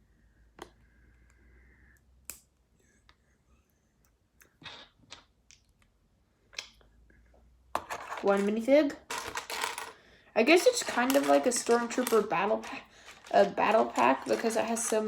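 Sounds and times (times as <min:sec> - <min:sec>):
plastic toy pieces clicking: 0:08.0 - 0:10.0, 0:10.6 - 0:15.0.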